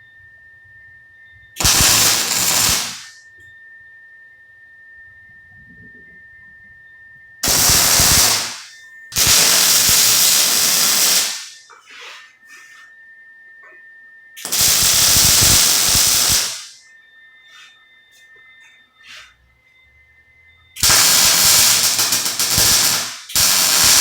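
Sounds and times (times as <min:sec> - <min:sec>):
welder arc crackling: 0:01.6 - 0:03.2, 0:07.4 - 0:11.7, 0:14.4 - 0:16.8, 0:20.8 - 0:24.0.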